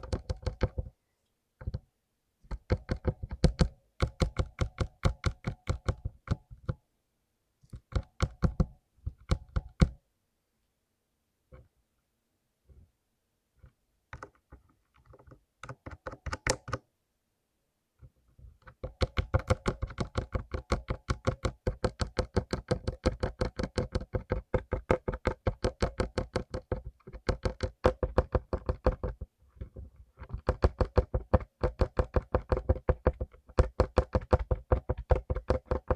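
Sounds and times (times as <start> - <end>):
mechanical keyboard typing: 0.0 - 0.9, 15.1 - 16.8, 18.8 - 29.3, 30.2 - 35.9.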